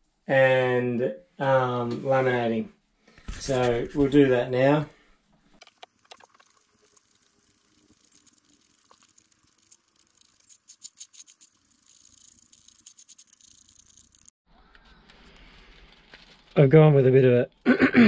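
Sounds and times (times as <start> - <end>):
faint scratching with quick clicks: 5.7 - 16.6.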